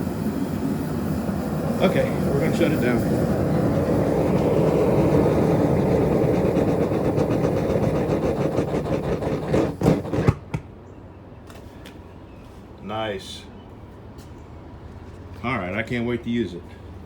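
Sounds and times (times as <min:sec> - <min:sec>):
forge burner rushing: 0:00.0 - 0:10.5
burner shutdown pops: 0:01.1 - 0:10.8.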